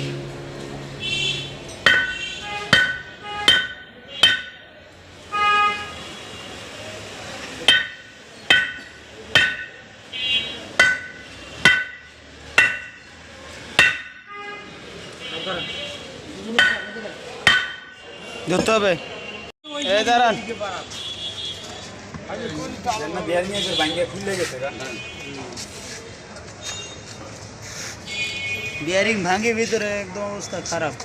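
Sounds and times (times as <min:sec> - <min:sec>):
hammer striking steel: 0:01.3 - 0:04.6, 0:07.6 - 0:09.8, 0:10.8 - 0:13.1, 0:13.8 - 0:14.3, 0:16.5 - 0:18.0.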